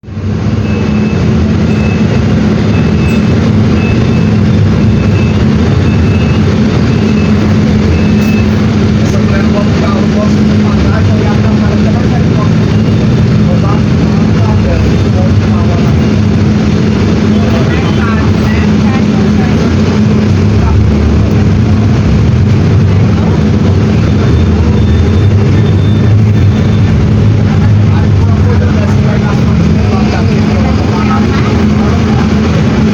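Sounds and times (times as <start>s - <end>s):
diesel bus engine running: 0.0s - 32.9s
faint high beep: 0.6s - 8.6s.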